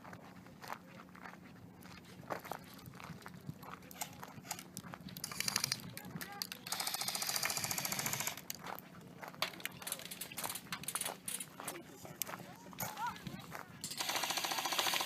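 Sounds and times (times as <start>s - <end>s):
airsoft gun firing bursts: 5.2s - 5.8s, 6.6s - 8.5s, 13.8s - 15.0s.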